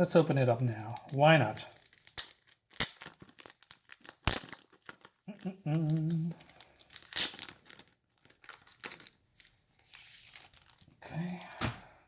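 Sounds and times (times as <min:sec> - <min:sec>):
plastic wrapping crinkling and tearing: 0:00.6 - 0:11.4
man humming: 0:05.3 - 0:06.4.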